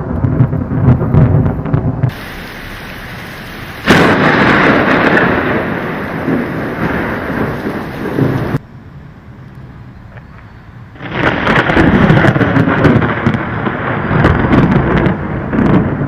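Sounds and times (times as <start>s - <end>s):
thunderclap rumbling: 0.0s - 8.6s, 10.8s - 16.0s
steady rain: 1.8s - 8.6s, 10.8s - 16.0s.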